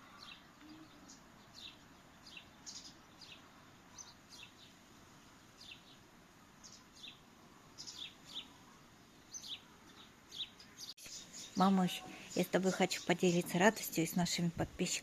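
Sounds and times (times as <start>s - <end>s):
faint songbirds chirping: 0.0s - 15.0s.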